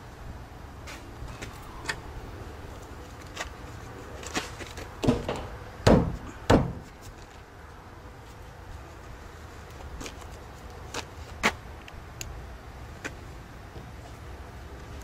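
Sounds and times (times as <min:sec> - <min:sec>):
heavy thumps on sheet metal: 0:05.0 - 0:06.9.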